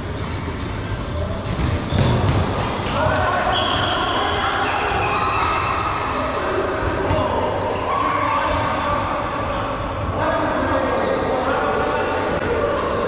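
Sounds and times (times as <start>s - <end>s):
balls bouncing on hard floor: 0.1s - 3.0s.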